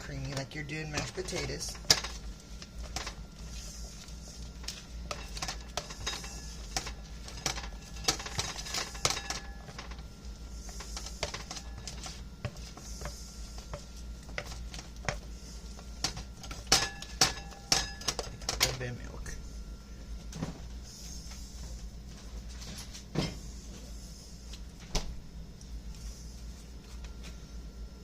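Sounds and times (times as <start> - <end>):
utensils and dishes clinking: 4.6 - 10.0, 16.0 - 18.8.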